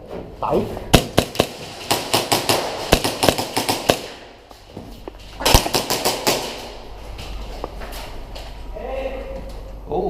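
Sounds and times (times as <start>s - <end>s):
airsoft guns firing: 0.9s - 4.4s, 5.4s - 6.8s.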